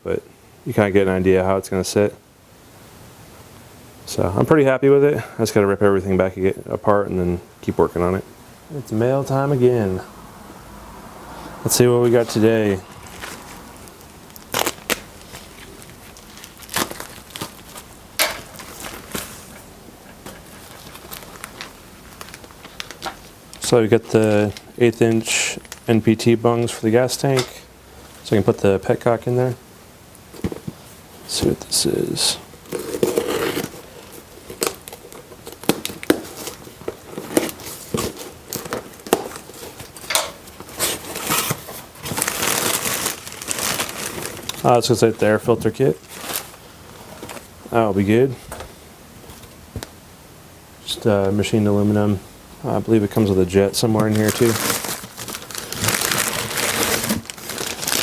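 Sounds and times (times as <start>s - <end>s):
packaging crackling and rustling: 12.1s - 29.3s, 30.2s - 47.6s, 53.0s - 58.0s.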